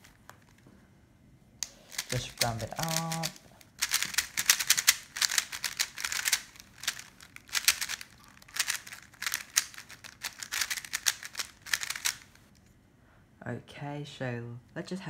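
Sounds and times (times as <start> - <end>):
plastic cube clicking: 1.6 - 12.4.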